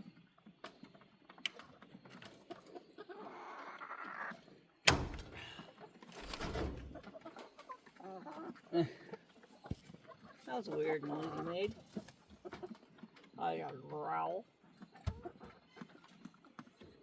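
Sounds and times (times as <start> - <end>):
sharp loud thunk: 4.9 - 5.5.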